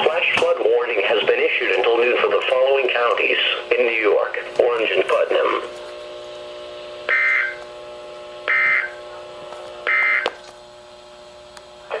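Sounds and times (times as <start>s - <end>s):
steady hum: 0.0s - 12.0s
warbling two-tone digital bursts: 7.1s - 7.6s.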